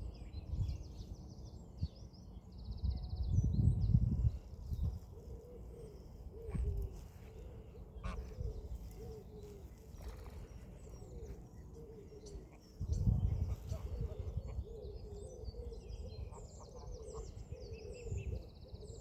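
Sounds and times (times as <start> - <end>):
small birds chirping: 0.0 - 19.0
geese calling softly: 5.0 - 18.5.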